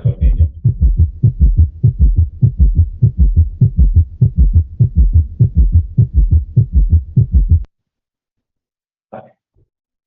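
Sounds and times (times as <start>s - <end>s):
heartbeat gallop thuds: 0.0s - 7.7s.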